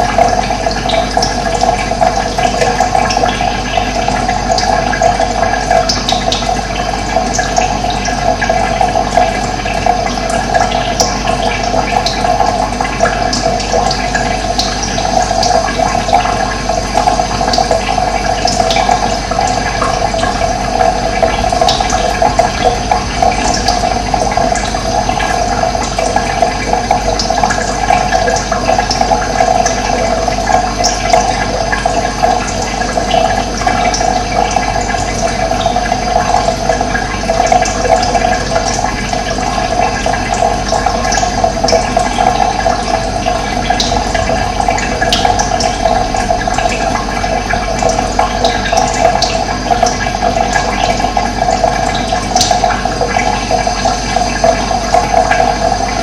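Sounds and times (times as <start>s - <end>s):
water rushing: 15.6s - 56.0s.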